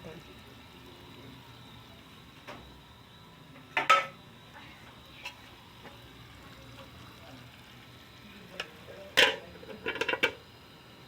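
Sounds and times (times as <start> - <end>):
metal cookware clanking: 3.8 - 4.2, 8.6 - 10.4.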